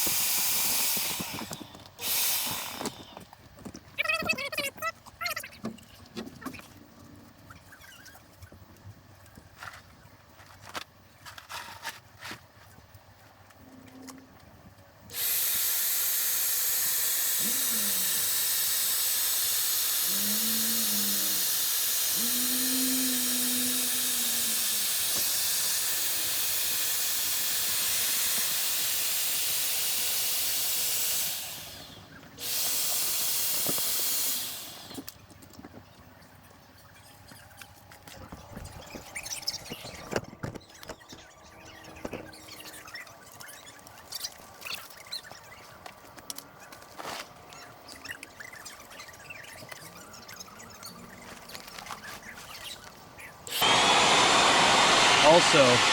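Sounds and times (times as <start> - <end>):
electric air pump hissing: 0.0 - 3.4, 15.1 - 35.2, 53.4 - 55.9.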